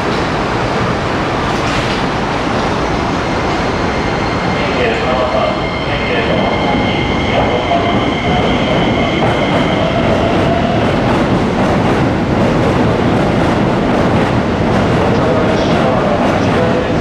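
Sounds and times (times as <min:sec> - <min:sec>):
electric train rumble: 0:00.0 - 0:17.0.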